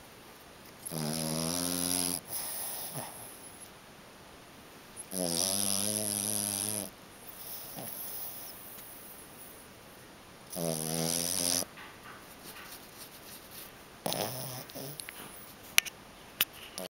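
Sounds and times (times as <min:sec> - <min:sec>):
dog snoring: 0:00.8 - 0:03.6, 0:05.0 - 0:09.0, 0:10.5 - 0:11.7, 0:14.0 - 0:15.1
dog breathing: 0:02.2 - 0:03.6.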